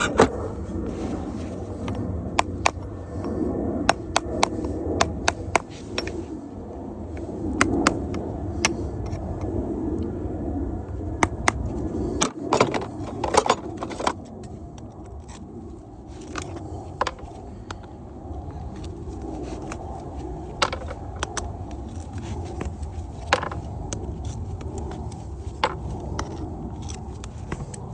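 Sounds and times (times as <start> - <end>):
metal tools clinking on horseshoe: 5.3 - 6.2.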